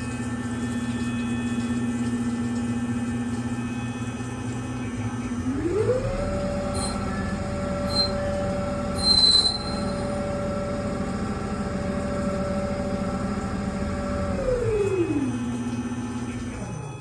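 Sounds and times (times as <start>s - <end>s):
lathe spindle whine: 5.4s - 17.0s
short high squeaks: 6.7s - 10.3s.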